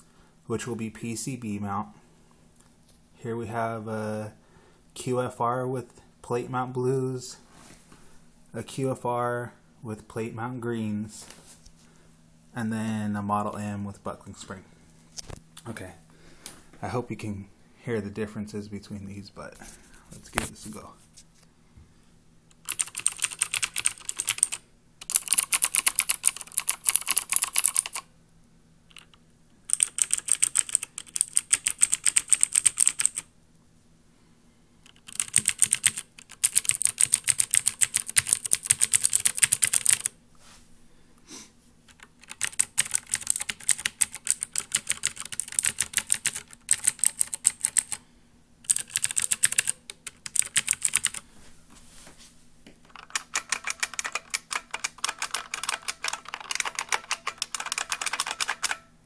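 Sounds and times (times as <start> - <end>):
mechanical keyboard typing: 22.6 - 28.1, 28.9 - 33.3, 34.8 - 40.1, 41.9 - 48.0, 48.7 - 51.2, 52.8 - 58.9.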